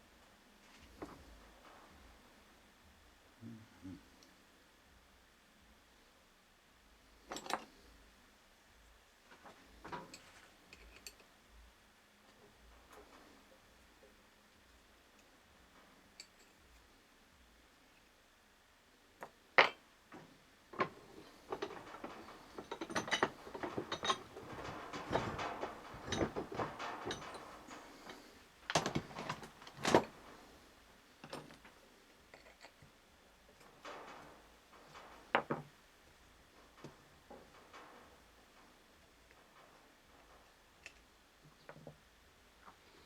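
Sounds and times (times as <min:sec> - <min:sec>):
metal tools clinking and knocking: 0:20.8 - 0:30.5
metal scraping and clatter: 0:20.8 - 0:31.7, 0:33.5 - 0:40.6.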